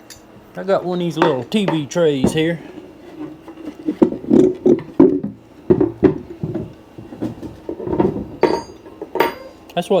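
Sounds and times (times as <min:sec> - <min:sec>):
wooden tray knocks and clatters: 0:03.2 - 0:09.3.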